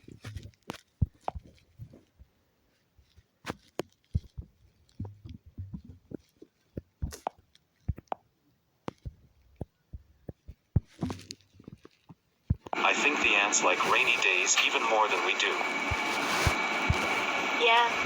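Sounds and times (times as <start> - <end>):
irregular clicks and soft knocks: 0.0 - 12.8.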